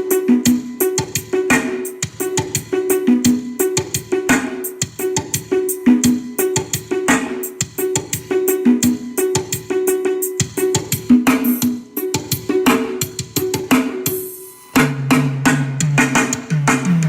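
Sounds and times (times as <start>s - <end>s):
loud dance music with drum beat: 0.0s - 17.0s.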